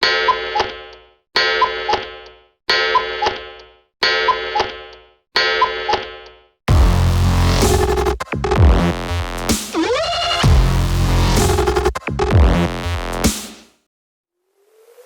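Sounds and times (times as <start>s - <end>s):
electronic music with heavy beat: 6.7s - 13.7s.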